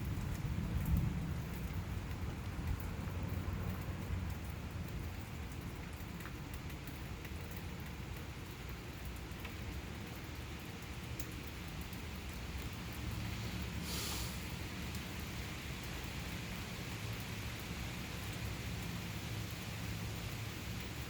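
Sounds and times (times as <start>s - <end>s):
low thunder rumble: 0.0s - 3.7s
steady rain falling: 0.0s - 21.0s.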